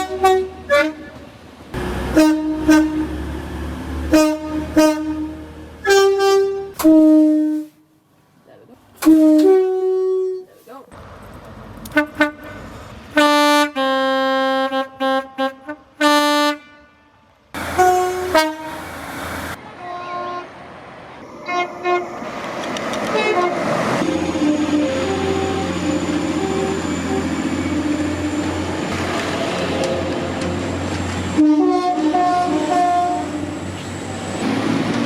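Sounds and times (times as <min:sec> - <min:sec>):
train horns blowing: 0:00.0 - 0:01.2, 0:01.8 - 0:03.3, 0:04.0 - 0:07.9, 0:09.0 - 0:10.5, 0:11.9 - 0:19.0, 0:19.8 - 0:20.6, 0:21.4 - 0:22.1, 0:23.1 - 0:28.7, 0:31.3 - 0:33.6
train rumble: 0:00.0 - 0:07.1, 0:17.6 - 0:35.0.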